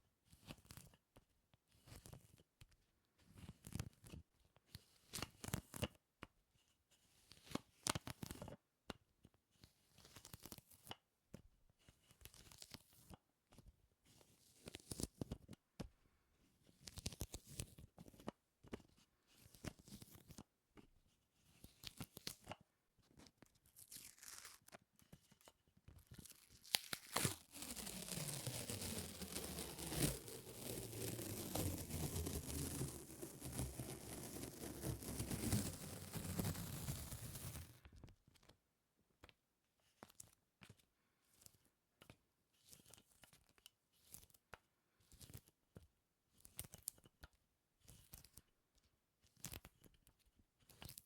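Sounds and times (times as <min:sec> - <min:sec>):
sticky peeling crackles: 0:23.8 - 0:24.7, 0:26.2 - 0:37.7.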